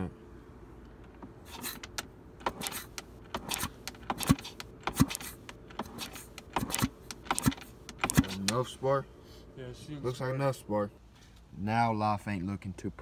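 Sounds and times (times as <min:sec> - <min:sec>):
metallic clicks and clunks: 0:01.0 - 0:08.6.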